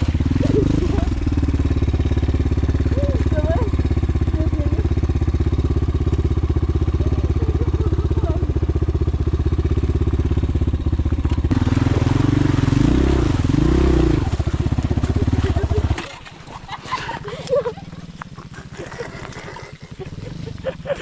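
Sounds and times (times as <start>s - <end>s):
small engine chugging and revving: 0.0s - 21.0s.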